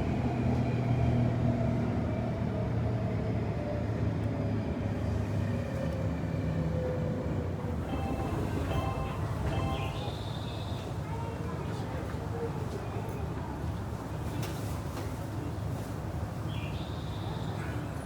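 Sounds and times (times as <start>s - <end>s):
train running rumble: 7.6s - 11.0s
short higher tones: 7.9s - 10.4s.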